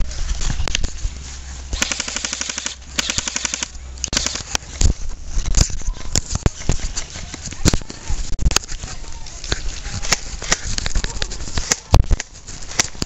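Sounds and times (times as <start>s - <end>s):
airsoft guns firing: 1.7s - 4.6s.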